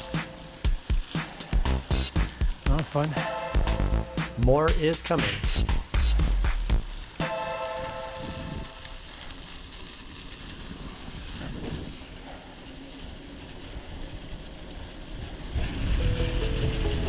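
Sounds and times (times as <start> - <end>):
bike tyres on dirt: 7.0 - 17.0
wind on microphone: 10.8 - 12.2.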